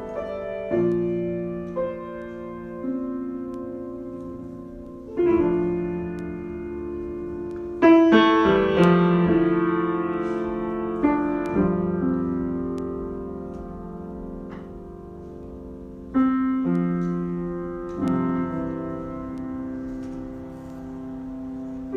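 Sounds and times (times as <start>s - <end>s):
slow solo piano: 0.0s - 21.9s.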